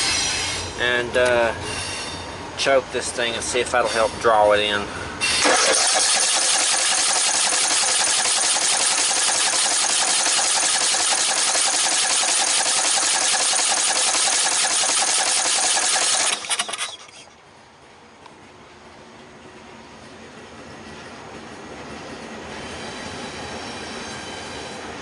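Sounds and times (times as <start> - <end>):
engine cranking on starter: 5.4 - 17.3.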